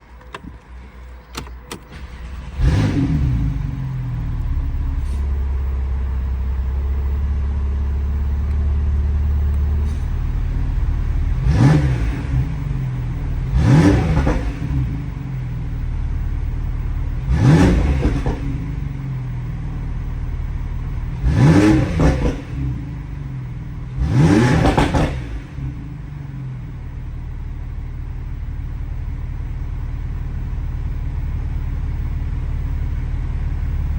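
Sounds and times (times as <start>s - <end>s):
engine idling and revving: 0.0s - 33.9s
engine cranking and starting: 0.1s - 5.5s
exhaust crackles: 0.2s - 29.2s.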